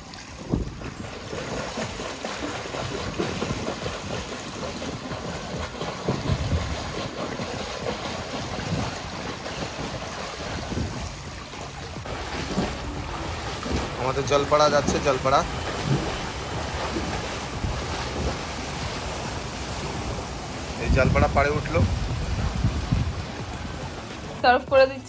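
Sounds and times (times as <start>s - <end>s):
water splashing and churning: 0.0s - 25.0s.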